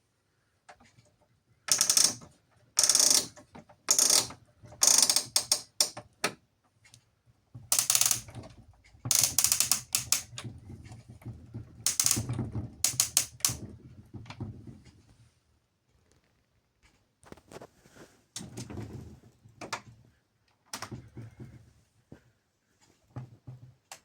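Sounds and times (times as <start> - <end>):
rapid plastic ratcheting clicks: 1.7 - 6.0, 7.7 - 8.5, 9.1 - 10.4, 11.9 - 13.6.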